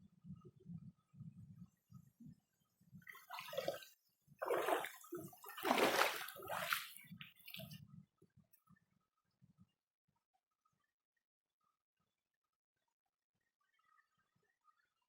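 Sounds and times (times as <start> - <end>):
creek water splashing over rocks: 3.2 - 3.8, 4.4 - 7.7.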